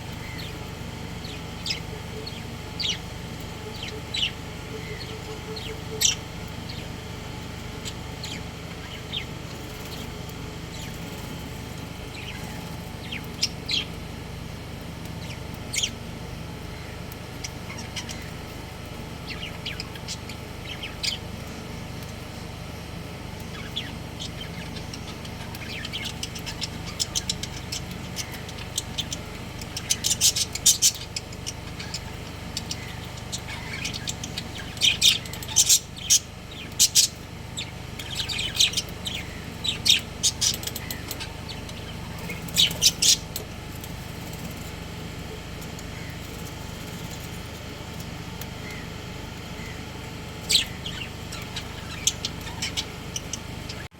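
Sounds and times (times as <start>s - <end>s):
budgerigars chirping: 0.0s - 11.5s, 12.1s - 14.0s, 15.2s - 16.0s, 16.7s - 18.4s, 19.2s - 21.7s, 23.4s - 44.4s, 45.3s - 53.9s
steady low hum: 0.0s - 53.9s.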